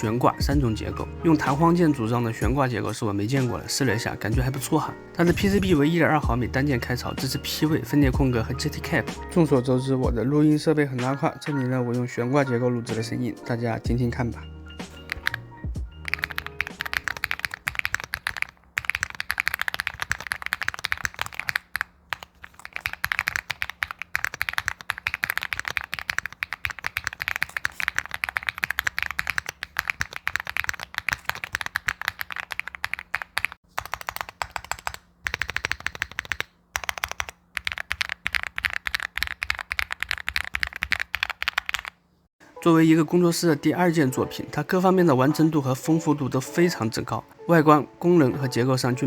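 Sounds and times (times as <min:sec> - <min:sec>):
mechanical keyboard typing: 0:14.8 - 0:42.0.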